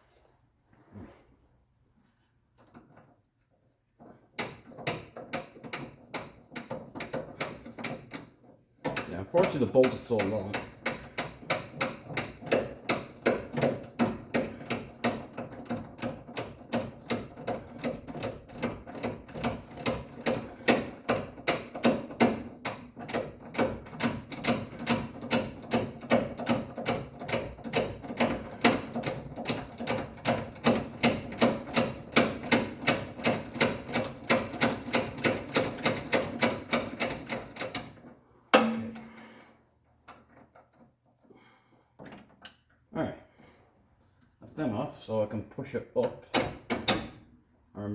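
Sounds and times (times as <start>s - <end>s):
loud clunk: 38.5s - 39.3s.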